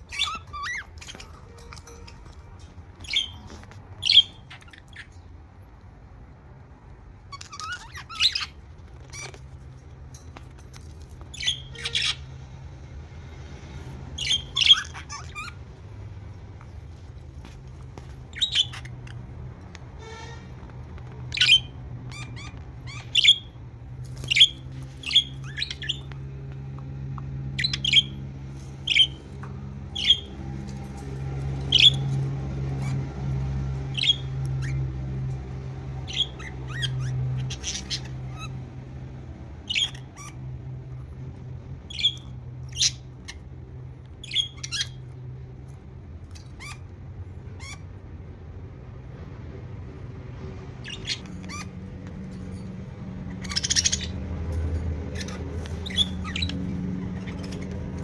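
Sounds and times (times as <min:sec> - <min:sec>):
budgerigars squawking chirps: 0:00.0 - 0:02.2, 0:03.0 - 0:05.2, 0:07.3 - 0:09.4, 0:11.3 - 0:12.3, 0:14.2 - 0:15.6, 0:18.3 - 0:19.2, 0:29.9 - 0:30.4, 0:31.7 - 0:32.2, 0:36.1 - 0:38.6, 0:39.7 - 0:40.4, 0:44.2 - 0:45.0, 0:50.8 - 0:51.8, 0:53.3 - 0:54.2, 0:55.1 - 0:58.0.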